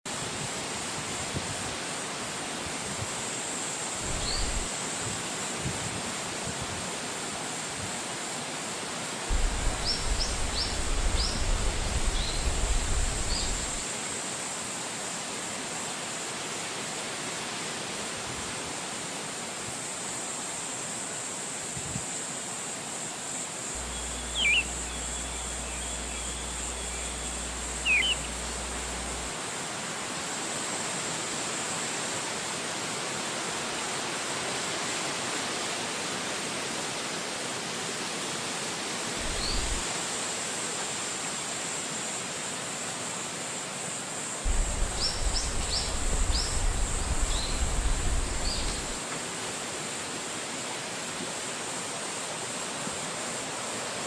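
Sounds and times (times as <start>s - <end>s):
steady rainfall: 0.1s - 54.0s
low rumble: 9.3s - 13.8s, 23.8s - 29.3s, 44.5s - 49.0s
short high chirps: 23.8s - 29.3s.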